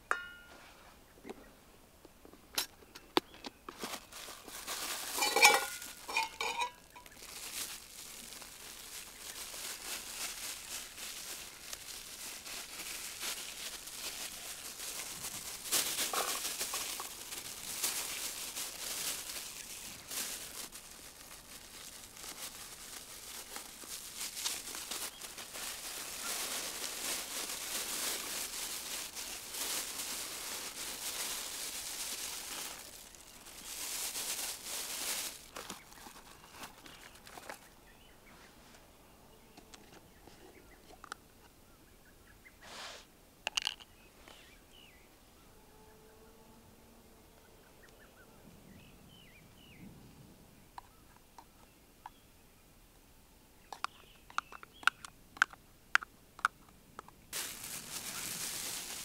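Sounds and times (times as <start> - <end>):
plastic bag crinkling: 3.7 - 37.8, 57.3 - 59.0.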